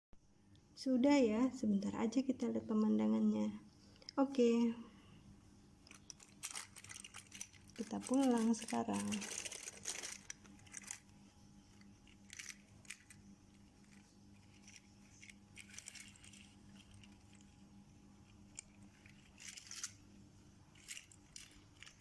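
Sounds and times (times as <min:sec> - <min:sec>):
low steady hum: 0:00.2 - 0:22.0
small toys clicking and rattling: 0:05.8 - 0:20.1, 0:20.7 - 0:22.0.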